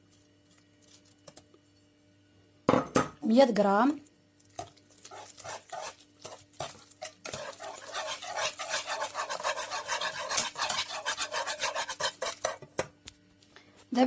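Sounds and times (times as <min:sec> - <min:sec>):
utensil scraping a saucepan: 0:04.6 - 0:12.9.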